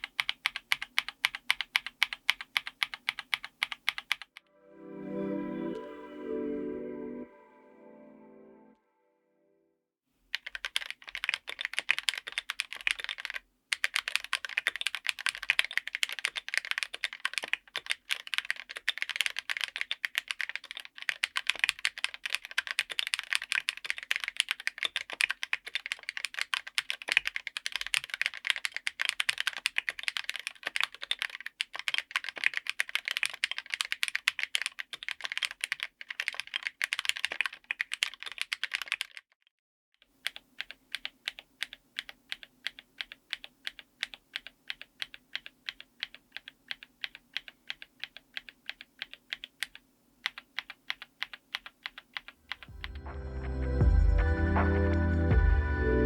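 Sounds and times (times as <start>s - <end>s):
fast typing on mechanical keyboard: 0.0s - 4.4s, 10.3s - 39.4s, 40.0s - 53.0s.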